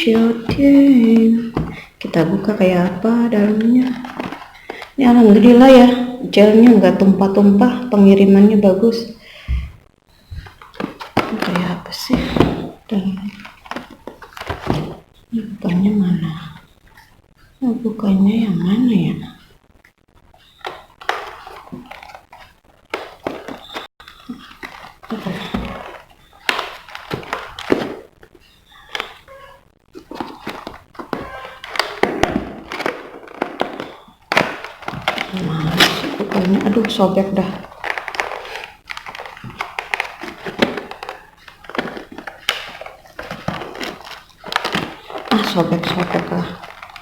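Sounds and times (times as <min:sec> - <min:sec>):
knocks and clicks on packaging: 0:00.0 - 0:05.0, 0:09.5 - 0:15.1, 0:20.5 - 0:29.3, 0:30.0 - 0:47.0
packaging rustling: 0:00.0 - 0:08.1, 0:10.1 - 0:15.6, 0:19.3 - 0:47.0.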